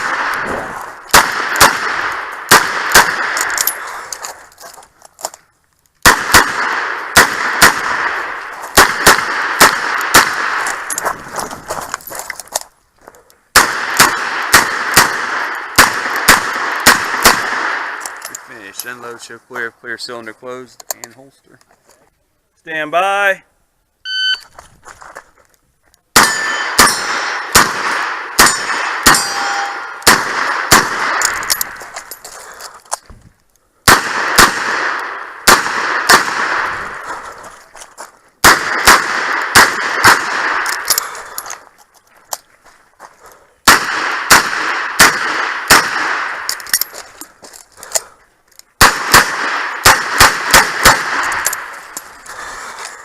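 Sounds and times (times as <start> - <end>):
bullets clanging on steel targets: 26.2 - 27.4, 28.4 - 32.3.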